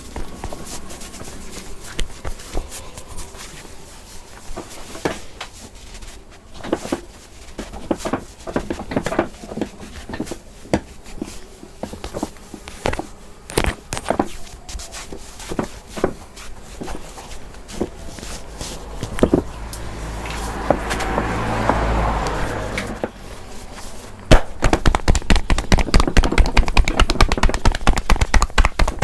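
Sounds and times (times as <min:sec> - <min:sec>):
hands slapping and patting skin: 0:00.0 - 0:05.6, 0:23.8 - 0:29.0.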